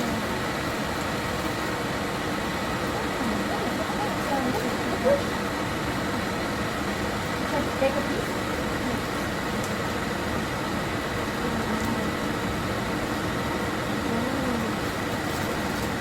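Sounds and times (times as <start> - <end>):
steady mechanical noise: 0.0 - 16.0
faint voices: 2.8 - 5.6, 11.2 - 12.6, 13.8 - 16.0.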